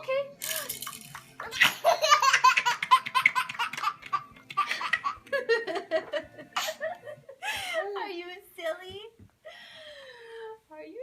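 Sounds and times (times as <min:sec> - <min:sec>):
baby laughing: 0:01.4 - 0:07.1.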